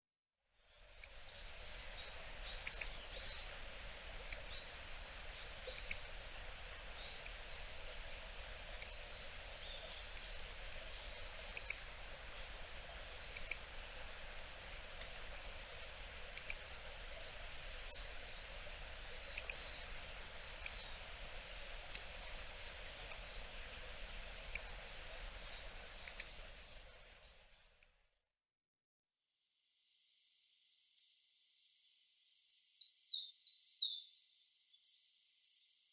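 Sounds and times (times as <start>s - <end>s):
bird ticking calls: 1.0s - 26.8s.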